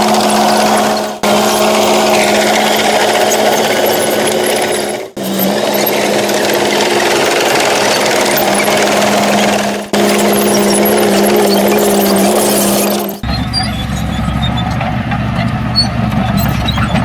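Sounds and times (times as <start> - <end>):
heavy diesel engine under load: 0.0 - 17.0.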